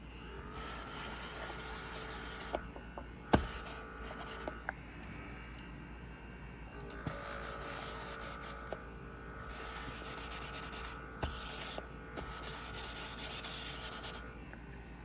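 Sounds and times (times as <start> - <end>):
small fan motor whine: 0.0 - 15.0
cleaner rubbing across desk: 0.5 - 2.6, 7.0 - 8.8, 9.5 - 14.3.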